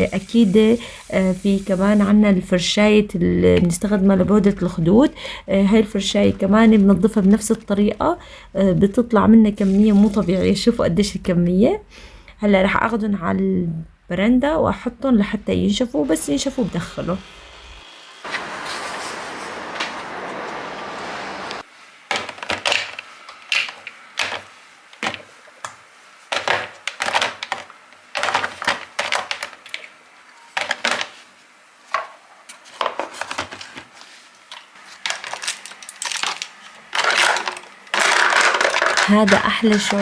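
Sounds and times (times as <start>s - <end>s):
small objects clicking and knocking: 26.3s - 29.9s, 34.5s - 40.0s.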